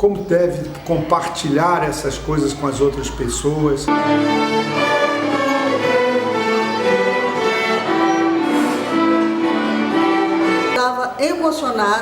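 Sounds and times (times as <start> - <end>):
bowed strings holding chords: 3.9 - 10.8.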